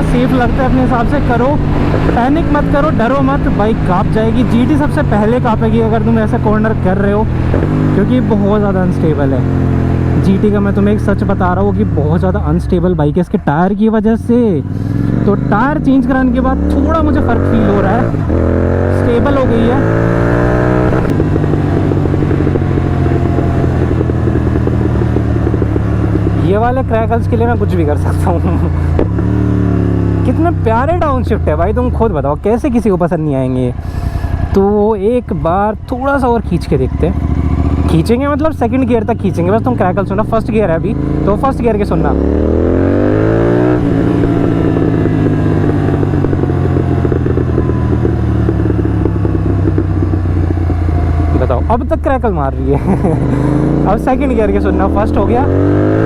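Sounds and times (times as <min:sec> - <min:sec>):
exhaust crackling and popping: 0:00.0 - 0:13.3, 0:14.2 - 0:35.2, 0:36.1 - 0:56.0
motorcycle engine drone: 0:00.0 - 0:56.0
exhaust crackles and pops: 0:19.1 - 0:33.0, 0:43.2 - 0:55.4.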